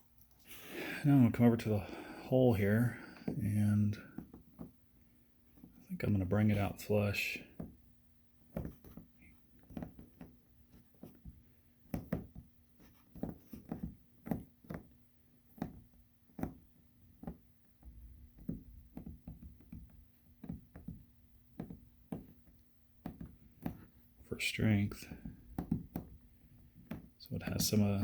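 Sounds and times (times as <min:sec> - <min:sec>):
soft knocks and taps on hull: 0:17.2 - 0:23.9, 0:25.0 - 0:27.6.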